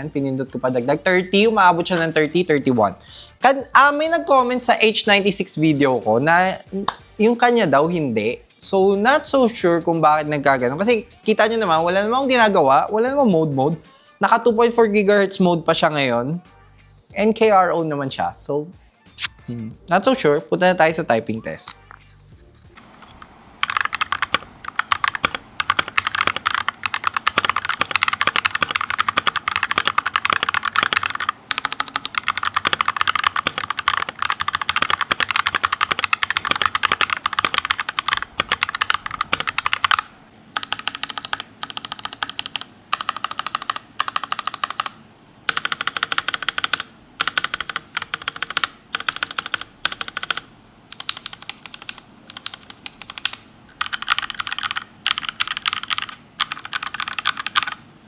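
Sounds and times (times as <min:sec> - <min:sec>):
mechanical keyboard typing: 0:22.8 - 0:57.8.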